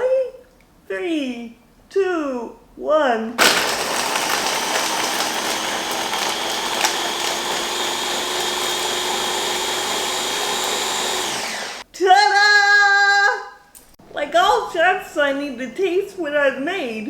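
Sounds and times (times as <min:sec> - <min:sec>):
blender motor running: 0:03.4 - 0:11.8.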